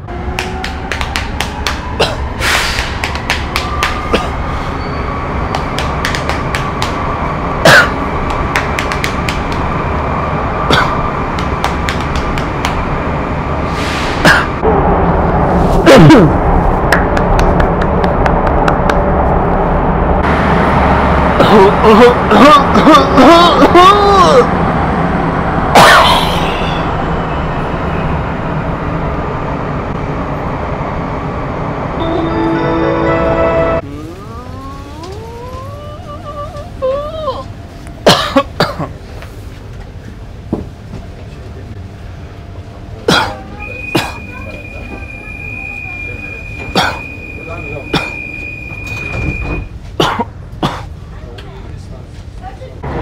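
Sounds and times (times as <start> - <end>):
metro train rumble and whine: 0.0 - 53.0
person fake coughing: 2.0 - 2.3, 4.1 - 4.4, 7.6 - 8.0, 10.7 - 11.0, 14.2 - 14.6, 21.4 - 23.9, 38.1 - 38.9, 43.1 - 43.4, 44.0 - 44.2, 46.7 - 47.0, 47.9 - 48.2, 50.0 - 50.9.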